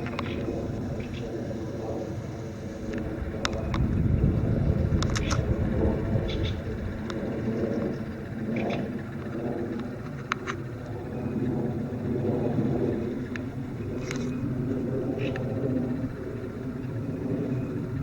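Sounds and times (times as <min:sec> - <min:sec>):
low rumbling drone: 0:00.0 - 0:18.0
birds chirping: 0:06.1 - 0:09.1.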